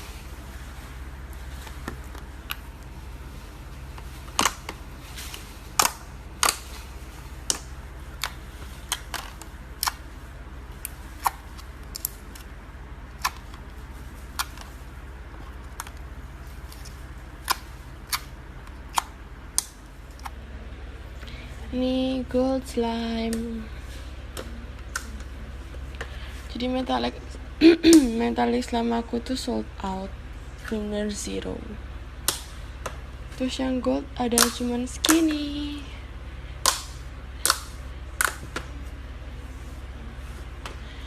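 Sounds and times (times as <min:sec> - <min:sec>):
steady low hum: 0:00.0 - 0:41.0
slime popping and clicking: 0:36.6 - 0:38.4.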